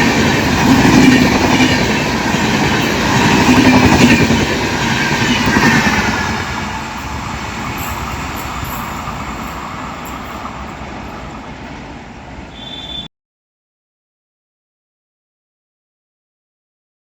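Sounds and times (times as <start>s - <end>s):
passenger train running past: 0.0s - 13.1s.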